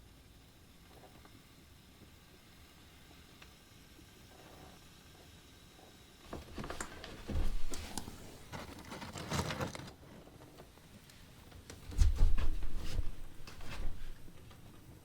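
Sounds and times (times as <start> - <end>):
wood fire crackling and popping: 6.2 - 15.0
dull low thuds: 7.2 - 7.9, 11.9 - 14.4.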